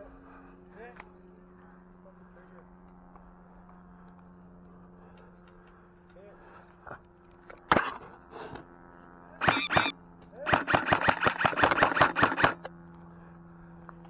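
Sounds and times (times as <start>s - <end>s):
airsoft gunfire: 9.4s - 9.9s, 10.5s - 12.7s.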